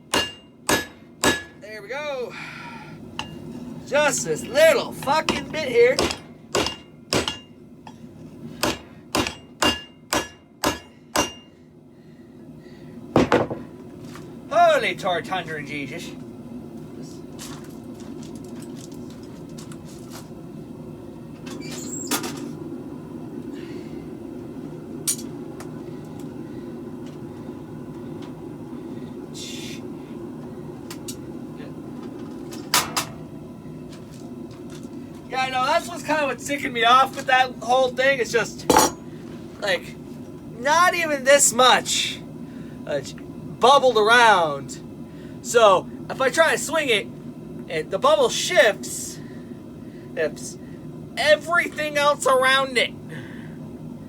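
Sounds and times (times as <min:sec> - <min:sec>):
hammer striking metal on anvil: 0:00.1 - 0:01.6, 0:05.3 - 0:08.0, 0:08.6 - 0:11.5.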